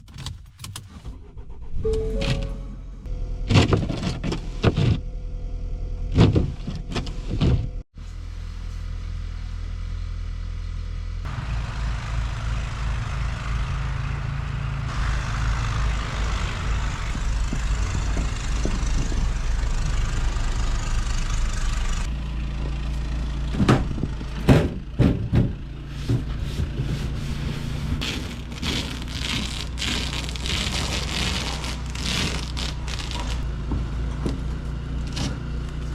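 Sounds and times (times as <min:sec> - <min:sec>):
vehicle engine drone: 0:01.2 - 0:35.9
sharp knocks and clatters: 0:17.1 - 0:19.9.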